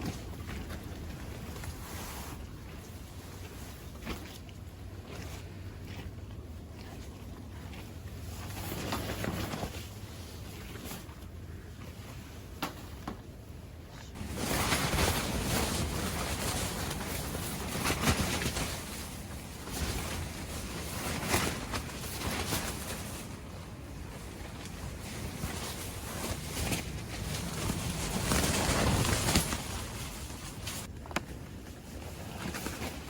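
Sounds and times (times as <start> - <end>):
storm wind blowing: 14.2 - 30.9.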